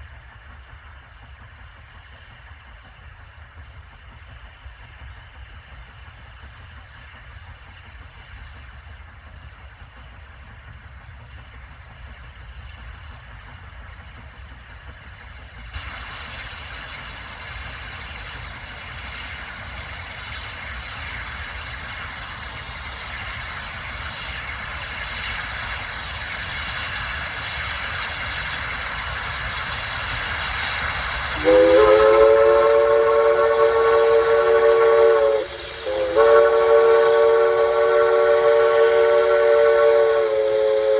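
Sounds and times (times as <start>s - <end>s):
steam locomotive rumble and hiss: 0.0s - 40.9s
steam whistle blast: 31.3s - 40.9s.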